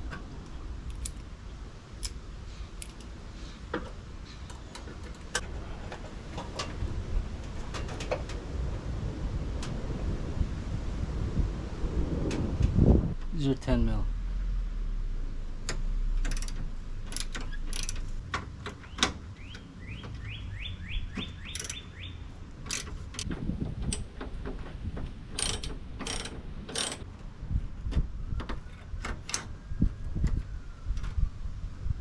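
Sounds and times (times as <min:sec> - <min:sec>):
socket ratchet clicking: 0:16.2 - 0:18.1, 0:21.4 - 0:21.9, 0:22.6 - 0:23.3, 0:25.4 - 0:27.0.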